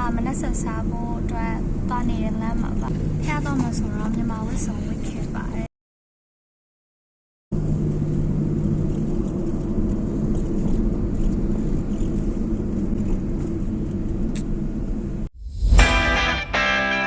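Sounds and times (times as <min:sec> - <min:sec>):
low hum: 0:15.3 - 0:17.0.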